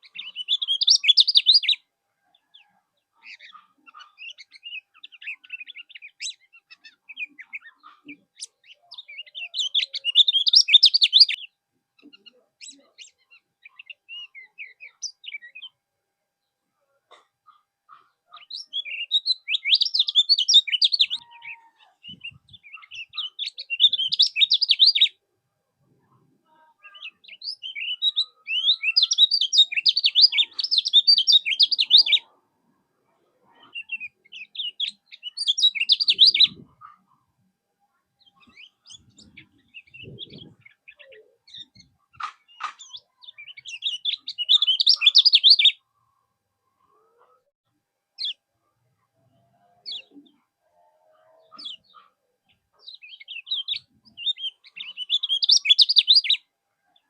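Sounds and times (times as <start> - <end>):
bird twittering chirps: 0.0 - 1.8, 2.6 - 11.5, 17.9 - 25.2, 26.9 - 32.2, 33.7 - 37.0, 38.2 - 45.8, 52.8 - 56.4.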